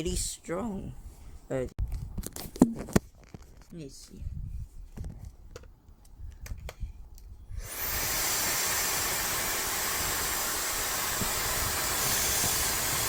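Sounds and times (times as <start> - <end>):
hair dryer blowing: 7.6 - 13.0.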